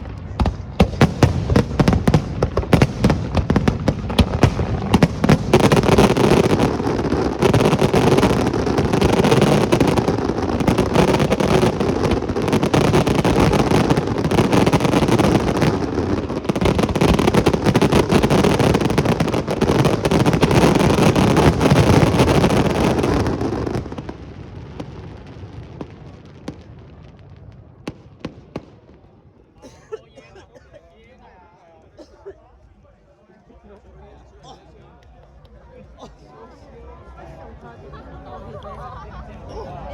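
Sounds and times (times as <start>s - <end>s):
fireworks bangs and crackling: 0.0s - 29.5s.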